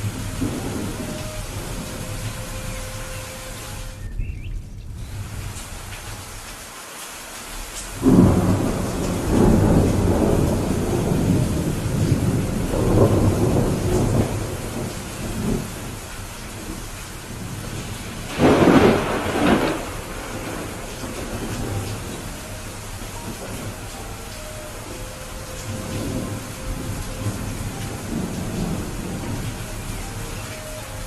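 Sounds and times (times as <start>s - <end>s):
thunder clap rolling: 0.0s - 3.2s, 8.0s - 31.0s
steady rain: 0.0s - 31.0s.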